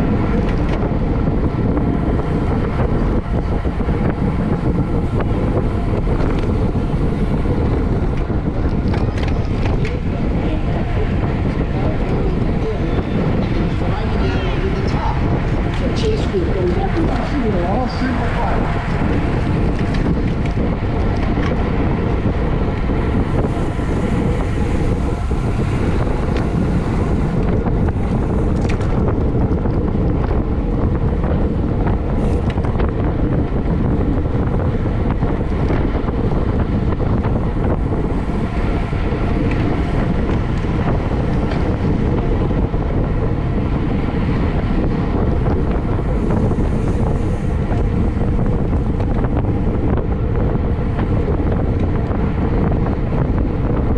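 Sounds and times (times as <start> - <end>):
wind rushing over microphone: 0.0 - 53.9.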